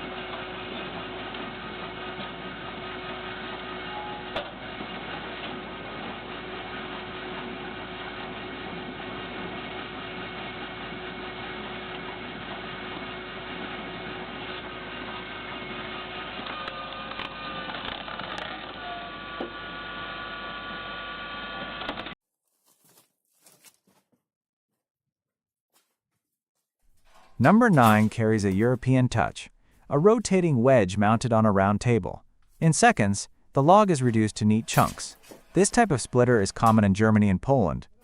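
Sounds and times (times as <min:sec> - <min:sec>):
firewood splitter machinery running: 0:00.0 - 0:22.2, 0:27.0 - 0:30.2, 0:33.5 - 0:37.6.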